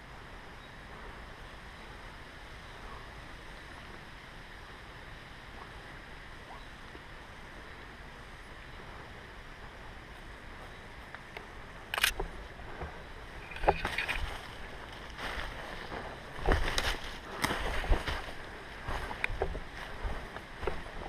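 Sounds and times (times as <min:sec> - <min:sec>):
rustling and crunching: 0:12.0 - 0:21.0.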